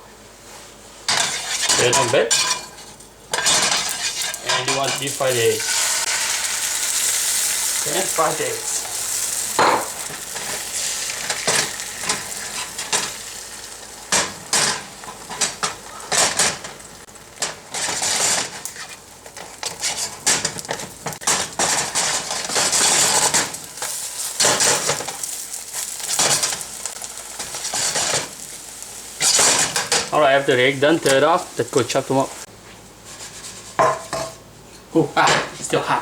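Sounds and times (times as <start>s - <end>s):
utensil clacking and scraping pan: 1.1s - 10.6s
eggs sizzling in oil: 1.1s - 34.4s.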